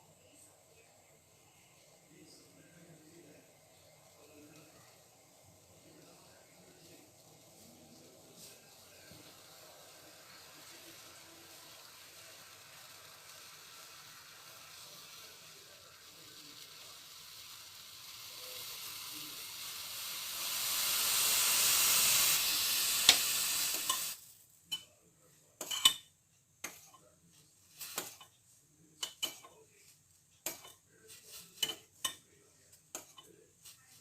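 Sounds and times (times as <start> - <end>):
hot pan sizzling: 0.0 - 34.0
metal utensils clinking: 25.6 - 26.0.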